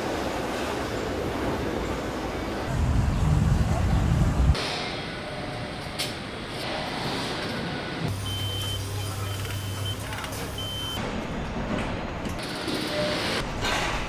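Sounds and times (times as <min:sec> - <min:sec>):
factory machinery noise: 0:00.0 - 0:14.0.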